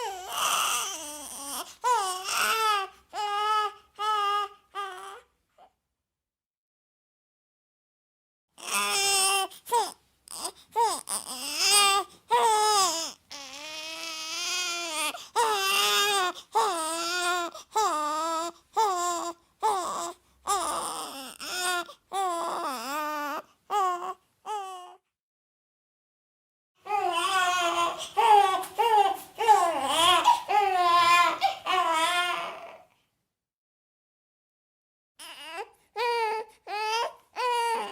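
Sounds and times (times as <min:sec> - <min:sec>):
baby crying: 0:00.0 - 0:05.8, 0:08.6 - 0:25.0, 0:26.8 - 0:32.9, 0:35.2 - 0:37.9.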